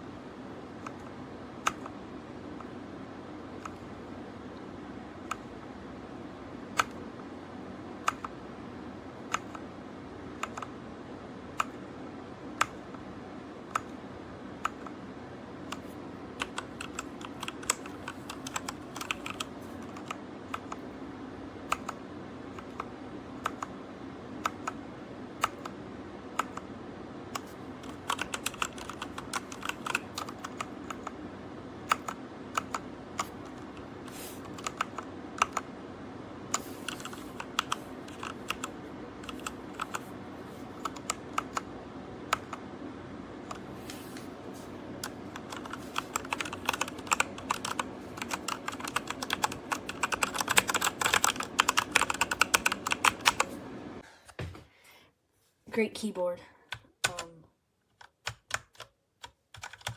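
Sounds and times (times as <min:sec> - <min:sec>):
mechanical keyboard typing: 0:00.7 - 0:02.0, 0:03.5 - 0:04.1, 0:05.2 - 0:05.7, 0:06.6 - 0:07.1, 0:08.0 - 0:08.5, 0:09.2 - 0:09.7, 0:10.3 - 0:10.8, 0:11.6 - 0:11.9, 0:12.6 - 0:13.0, 0:13.6 - 0:14.0, 0:14.6 - 0:15.0, 0:15.7 - 0:20.9, 0:21.6 - 0:23.8, 0:24.4 - 0:26.7, 0:27.3 - 0:31.2, 0:31.8 - 0:35.7, 0:36.5 - 0:42.7, 0:45.0 - 0:53.6, 0:56.7 - 0:57.4, 0:58.0 - 0:59.9.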